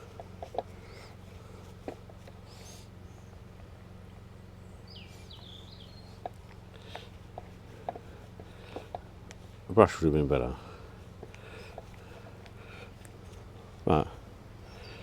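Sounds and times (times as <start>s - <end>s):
steady low hum: 0.0s - 15.0s
bird chirping: 4.3s - 7.1s, 14.6s - 15.0s.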